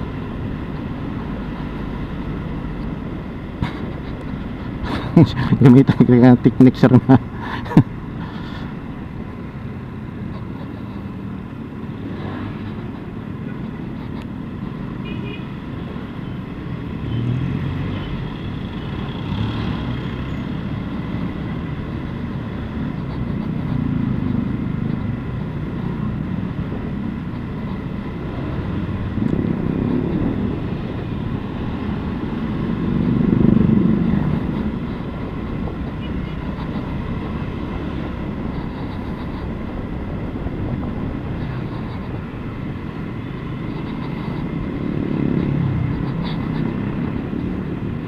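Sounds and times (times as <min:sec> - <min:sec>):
motorcycle engine rumble: 0:00.0 - 0:05.7, 0:07.0 - 0:48.0.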